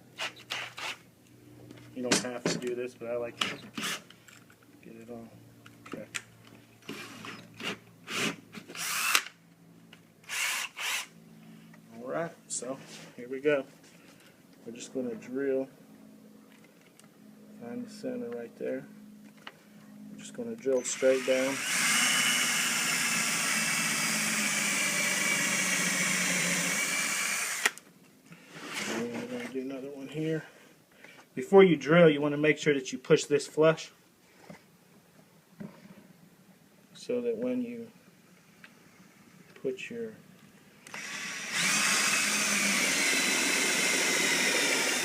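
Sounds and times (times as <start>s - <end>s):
power drill bursts: 8.1s - 9.3s, 10.3s - 11.1s, 20.8s - 27.8s, 40.9s - 45.0s.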